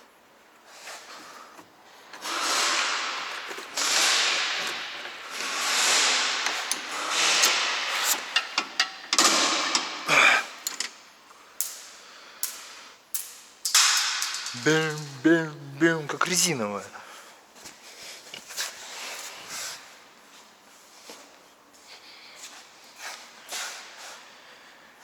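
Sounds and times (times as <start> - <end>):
hand tool rasping strokes: 2.2 - 8.5
sharp metallic clicks and knocks: 13.2 - 15.1.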